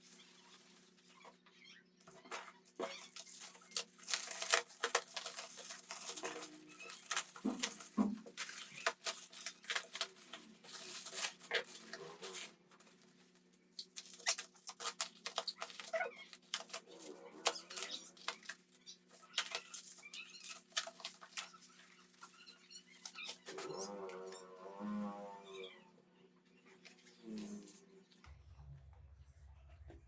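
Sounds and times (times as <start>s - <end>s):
low electrical hum: 0.0s - 30.0s
clicks and scrapes of plastic and metal: 2.0s - 13.1s, 13.7s - 24.3s.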